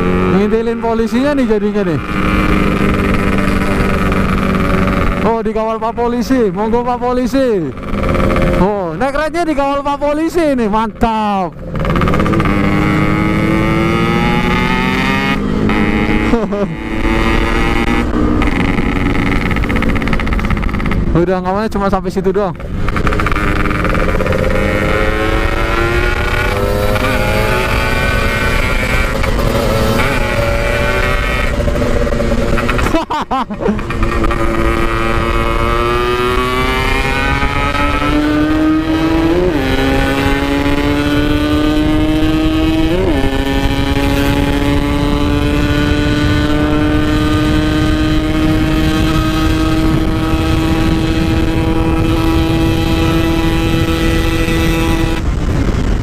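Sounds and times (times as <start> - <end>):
motorcycle engine revving: 0.0 - 56.0
wind rumble on microphone: 33.7 - 56.0.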